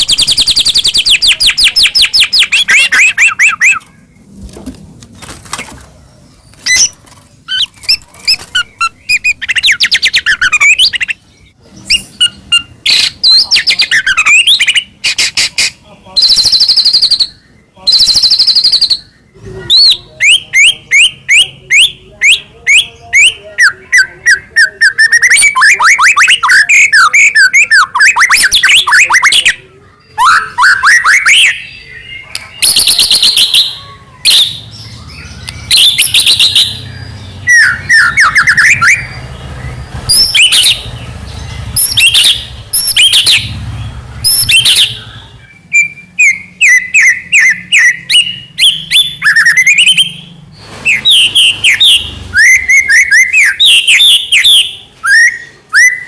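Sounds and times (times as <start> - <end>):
songbird singing loudly: 0.0 - 4.1, 6.6 - 56.0.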